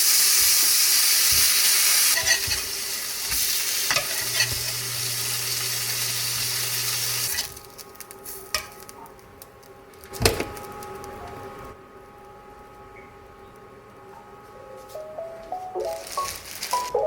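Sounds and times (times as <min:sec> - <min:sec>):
food sizzling in frying pan: 0:00.0 - 0:08.9, 0:15.8 - 0:17.0.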